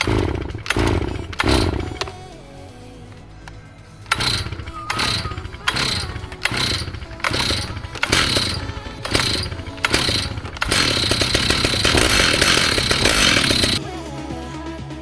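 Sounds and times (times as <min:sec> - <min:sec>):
music track: 0:00.0 - 0:15.0.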